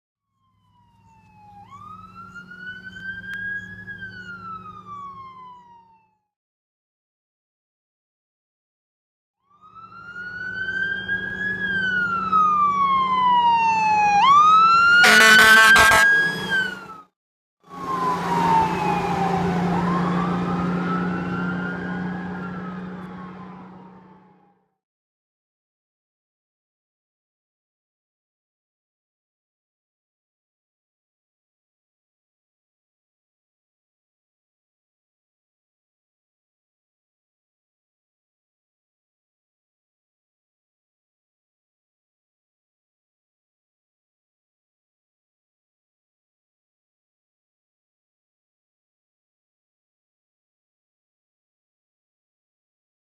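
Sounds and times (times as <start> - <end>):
emergency vehicle siren wailing: 0.4 - 6.3, 9.4 - 17.1, 17.7 - 24.8.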